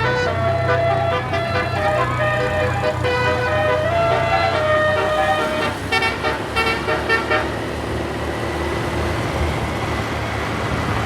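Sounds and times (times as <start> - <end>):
musical air horn notes: 0.0 - 7.6
low vehicle rumble: 0.0 - 11.0.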